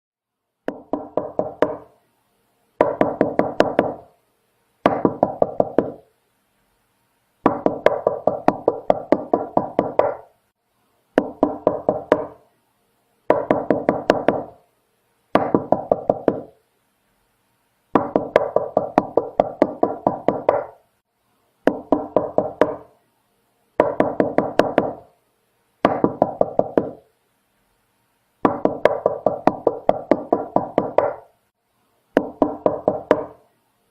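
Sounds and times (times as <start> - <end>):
rapid knocking on a door: 0.7 - 1.9, 2.8 - 4.1, 4.8 - 6.0, 7.4 - 10.2, 11.2 - 12.4, 13.3 - 14.6, 15.4 - 16.6, 18.0 - 20.8, 21.7 - 22.9, 23.8 - 25.1, 25.8 - 27.0, 28.4 - 31.3, 32.2 - 33.4.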